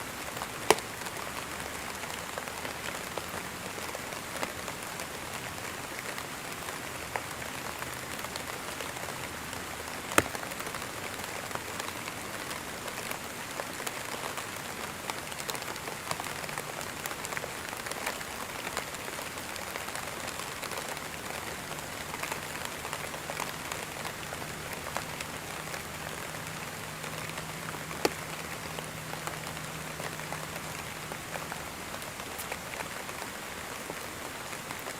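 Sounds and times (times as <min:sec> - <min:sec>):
steady rain hiss: 0:00.0 - 0:34.9
raindrop ticks: 0:20.8 - 0:34.6.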